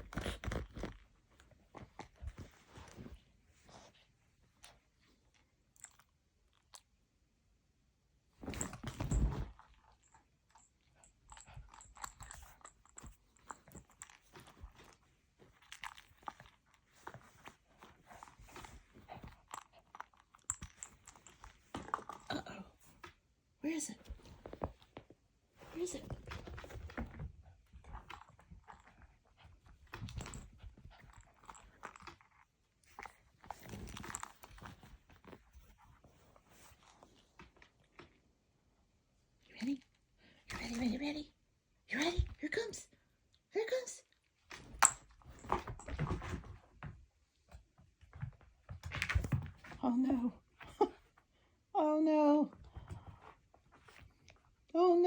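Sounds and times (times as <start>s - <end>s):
dog chewing and crunching: 11.3s - 22.2s.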